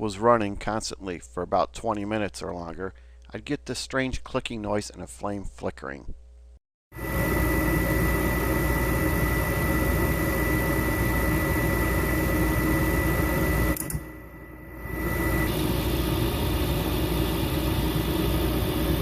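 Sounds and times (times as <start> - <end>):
gas furnace fan and burner: 7.0 - 19.0
high steady whine: 7.0 - 19.0.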